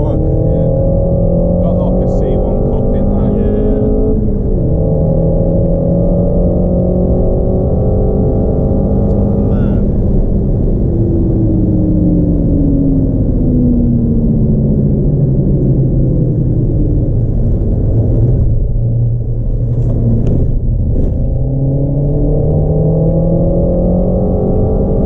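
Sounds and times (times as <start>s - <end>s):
car engine revving: 0.0s - 25.0s.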